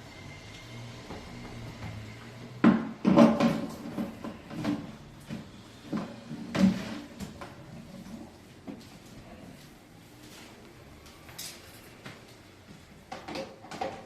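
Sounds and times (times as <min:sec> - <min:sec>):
hard parts knocking and clattering: 0:01.0 - 0:07.7, 0:13.1 - 0:14.0.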